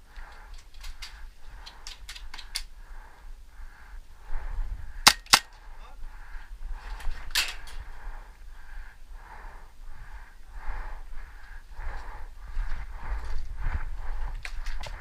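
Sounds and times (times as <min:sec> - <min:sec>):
airsoft gun cracks: 0:05.0 - 0:05.5.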